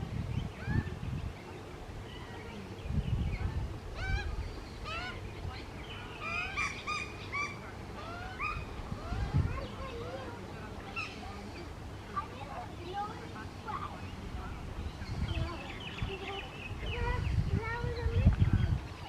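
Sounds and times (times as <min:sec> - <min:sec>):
young magpies squawking: 0:04.0 - 0:10.3.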